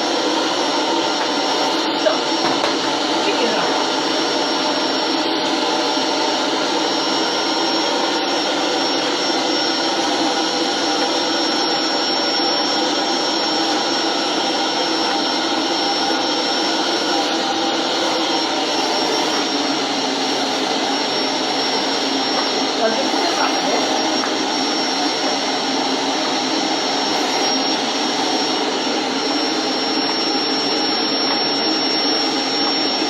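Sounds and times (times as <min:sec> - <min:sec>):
vacuum cleaner whining: 0:00.0 - 0:33.0.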